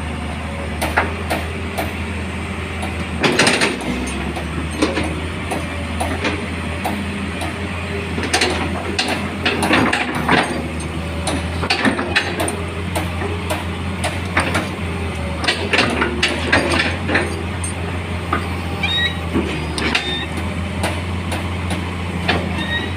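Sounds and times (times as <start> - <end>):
excavator diesel engine running: 0.0 - 22.9
metallic clanks and clicks: 2.8 - 7.6, 8.2 - 14.8, 15.4 - 17.9.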